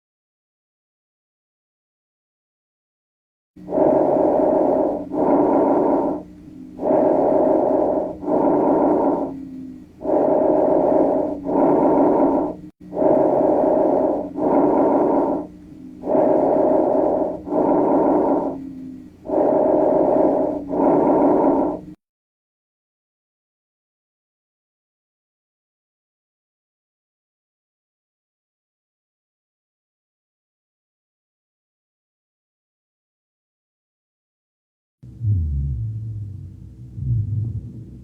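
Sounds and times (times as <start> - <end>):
person breathing: 3.6 - 22.0.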